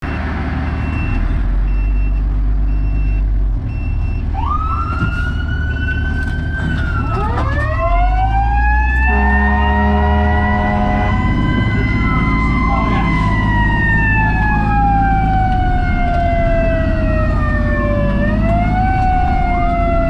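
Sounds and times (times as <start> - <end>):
fire truck engine running: 0.0 - 20.0
second siren sliding upward: 4.3 - 20.0
siren wailing: 4.3 - 20.0
horn sounding a chord: 9.0 - 11.5.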